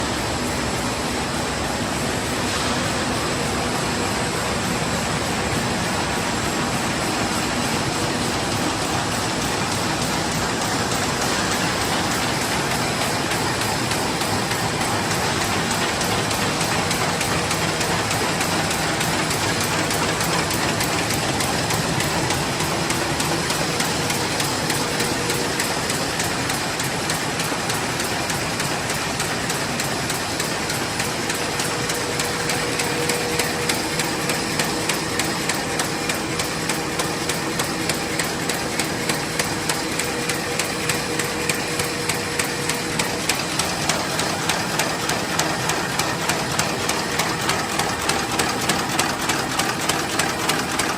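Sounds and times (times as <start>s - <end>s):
machine clattering with rapid clicks: 0.0s - 50.9s.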